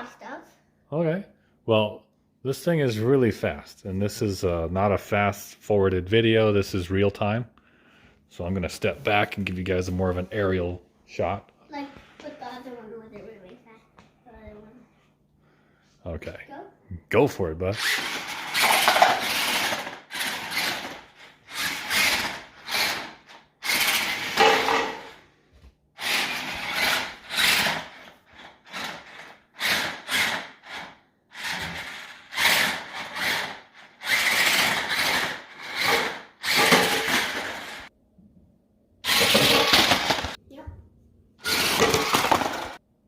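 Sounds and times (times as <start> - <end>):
toy truck electric motor whining: 17.8 - 25.2, 26.0 - 37.9, 39.0 - 40.4, 41.4 - 42.8.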